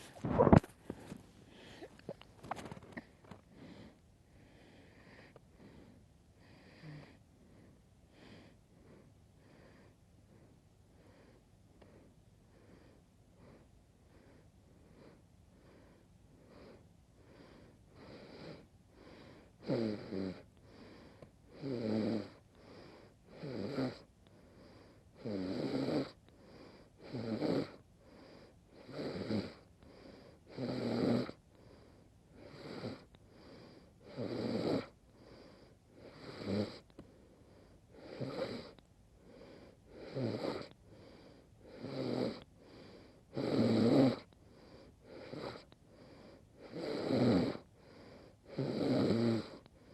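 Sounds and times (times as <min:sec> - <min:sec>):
faint breaths: 0:00.0 - 0:25.3, 0:26.1 - 0:30.6, 0:31.3 - 0:43.4, 0:44.2 - 0:48.7, 0:49.4 - 0:49.9
woman snoring: 0:06.5 - 0:07.2, 0:18.0 - 0:18.7, 0:19.6 - 0:20.5, 0:21.5 - 0:22.4, 0:23.3 - 0:24.1, 0:25.2 - 0:26.2, 0:27.0 - 0:27.8, 0:28.7 - 0:29.7, 0:30.4 - 0:31.4, 0:32.4 - 0:35.0, 0:36.0 - 0:36.9, 0:38.0 - 0:38.8, 0:39.5 - 0:40.8, 0:41.7 - 0:44.3, 0:45.1 - 0:45.7, 0:46.6 - 0:47.7, 0:48.4 - 0:49.7.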